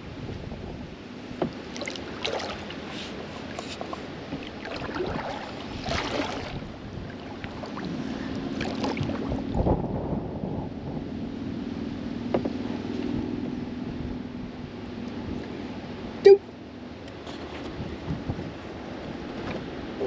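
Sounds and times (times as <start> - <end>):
wind on microphone: 0.0 - 1.7, 3.2 - 15.5, 17.3 - 20.0
paddle splashing in water: 1.2 - 9.6.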